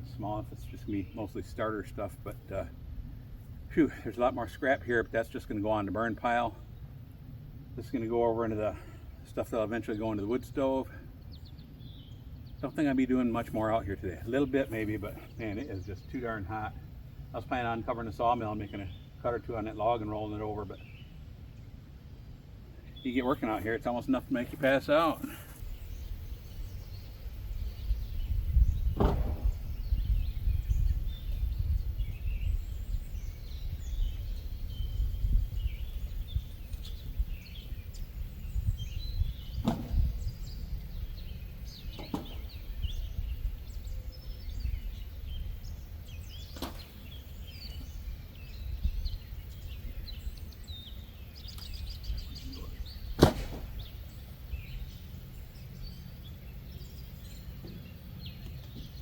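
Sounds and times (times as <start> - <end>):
birds chirping: 0.0 - 59.0
wind buffeting microphone: 25.6 - 54.8
sharp knocks: 29.0 - 29.6, 39.6 - 40.1, 42.0 - 42.5, 53.2 - 53.8.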